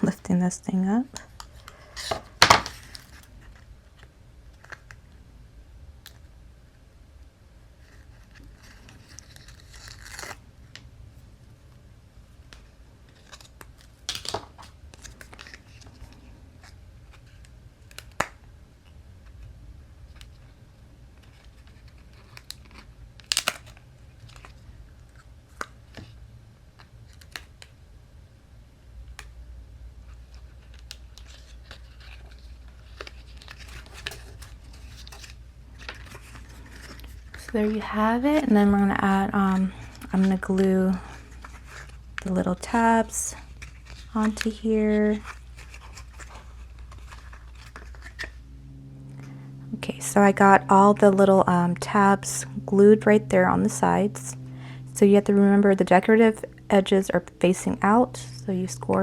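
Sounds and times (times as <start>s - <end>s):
paper rustling: 30.1s - 38.5s, 39.5s - 48.4s.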